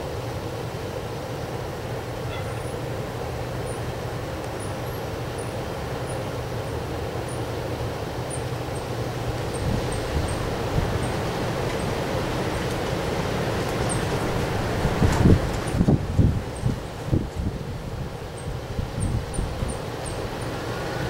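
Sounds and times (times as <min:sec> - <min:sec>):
wind blowing: 0:09.0 - 0:21.0.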